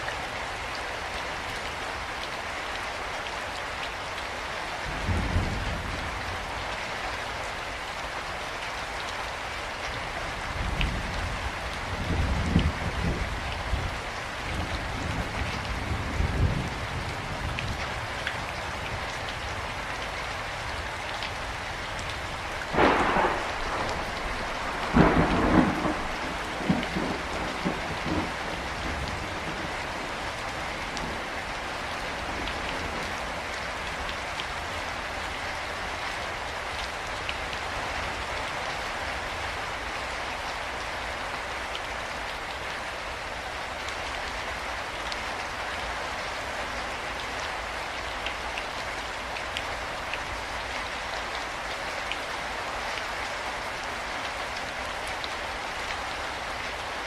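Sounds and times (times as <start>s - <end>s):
heavy rain falling: 0.0s - 57.0s
thunderclap rumbling: 22.7s - 30.3s.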